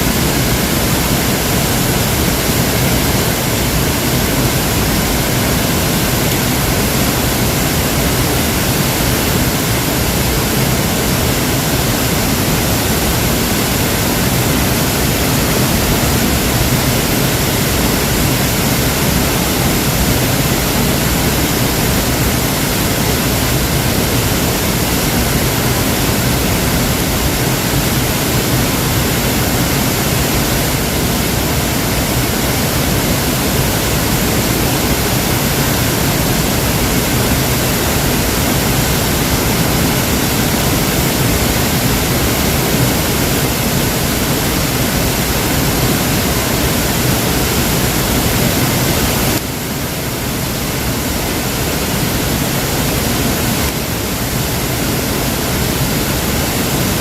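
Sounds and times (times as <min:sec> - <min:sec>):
waterfall rushing: 0:00.0 - 0:57.0.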